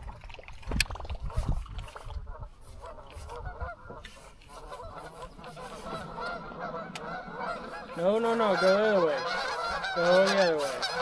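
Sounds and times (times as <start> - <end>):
geese honking: 2.3 - 11.0.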